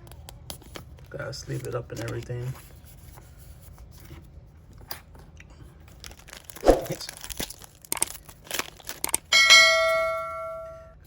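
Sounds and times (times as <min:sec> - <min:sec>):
cards and plastic sleeves rustling: 0:00.5 - 0:02.7, 0:05.8 - 0:09.3
foil wrapper crinkling and tearing: 0:05.9 - 0:09.3.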